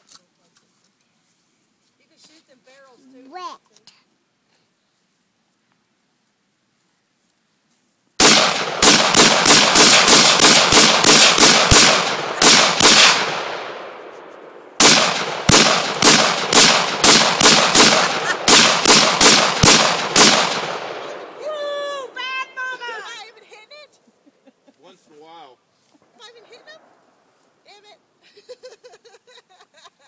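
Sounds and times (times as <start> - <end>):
rifle shots with echo: 8.2 - 21.4.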